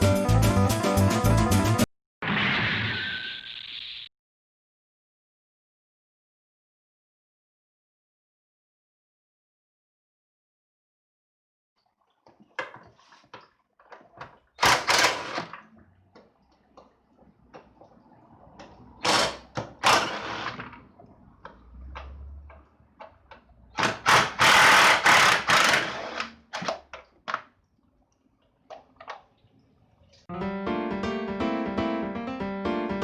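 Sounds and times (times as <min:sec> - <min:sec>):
loud rasping rushing bursts: 0:23.8 - 0:26.3.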